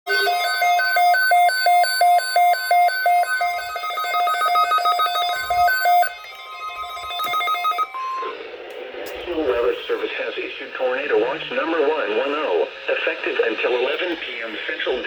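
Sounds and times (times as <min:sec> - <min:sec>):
electronic alert beeping: 0:00.1 - 0:08.5.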